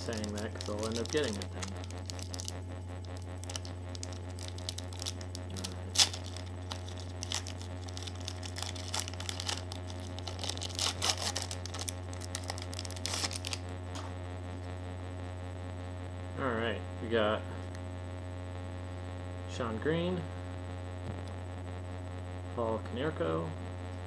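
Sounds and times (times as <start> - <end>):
card pack wrapper tearing and crinkling: 0.0 - 2.5, 3.4 - 13.6.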